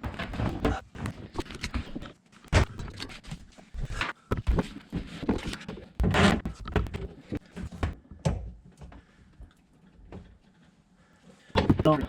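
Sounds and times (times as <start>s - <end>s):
parts and tools knocking and scraping: 0.0s - 9.1s.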